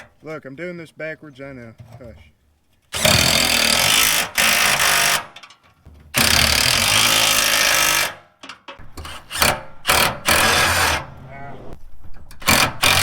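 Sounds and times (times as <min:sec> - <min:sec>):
impact wrench hammering: 0:03.0 - 0:11.0.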